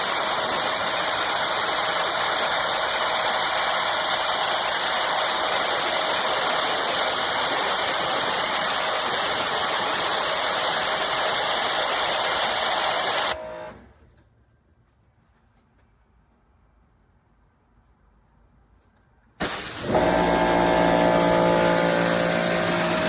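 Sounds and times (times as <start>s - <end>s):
pressure washer spraying water: 0.0s - 13.4s, 19.4s - 23.0s.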